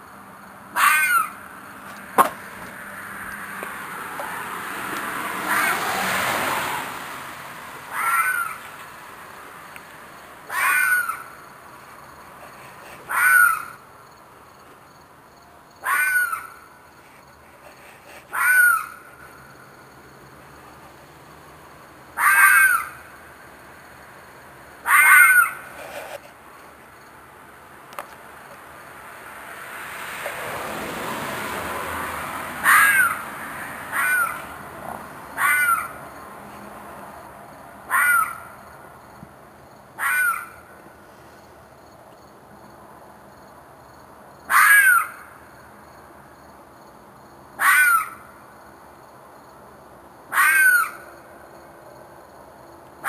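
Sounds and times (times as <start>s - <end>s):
animal screeching: 0.8s - 1.4s, 5.4s - 6.0s, 7.9s - 8.6s, 10.5s - 11.3s, 13.1s - 13.8s, 15.8s - 16.6s, 18.3s - 19.0s, 22.2s - 23.0s, 24.8s - 25.8s, 32.6s - 34.5s, 35.4s - 36.0s, 37.9s - 38.5s, 40.0s - 40.6s, 44.5s - 45.2s, 47.6s - 48.2s, 50.3s - 51.1s.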